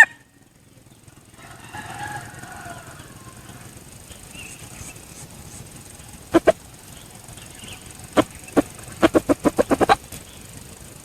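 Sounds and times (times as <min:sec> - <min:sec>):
junglefowl crowing: 0:00.0 - 0:00.2, 0:01.3 - 0:05.5, 0:06.3 - 0:07.3, 0:08.1 - 0:10.1
faint outdoor background: 0:00.0 - 0:11.0
faint high chirps: 0:02.2 - 0:11.0.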